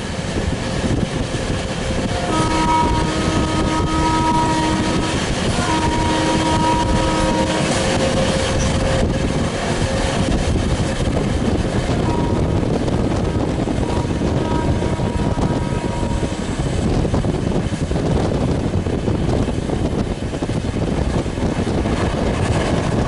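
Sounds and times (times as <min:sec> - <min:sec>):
train rumbling at speed: 0:00.0 - 0:23.0
locomotive horn blasts: 0:01.7 - 0:10.4, 0:11.9 - 0:12.6, 0:13.2 - 0:16.5.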